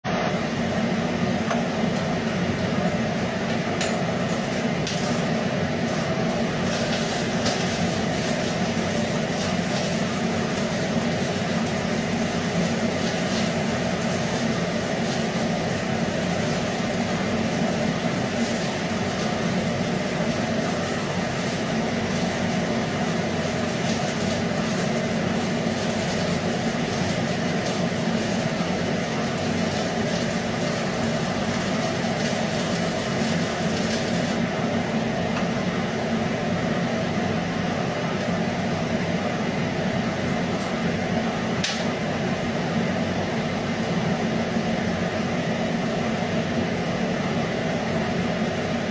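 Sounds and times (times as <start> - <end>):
low machine hum: 0.1 - 48.9
arc welding hiss: 4.2 - 34.4
faint welding crackles: 4.2 - 34.4.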